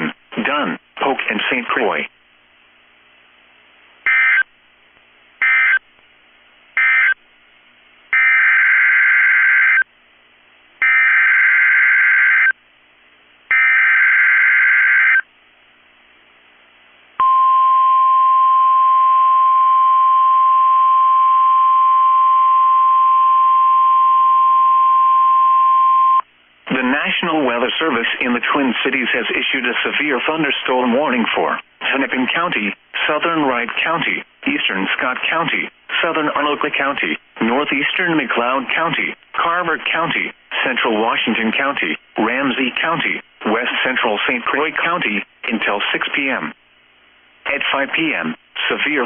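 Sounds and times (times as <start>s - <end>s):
steady warning alarm tone: 4.1s - 4.4s, 6.8s - 7.2s, 8.2s - 9.8s, 10.8s - 12.6s, 13.5s - 15.2s.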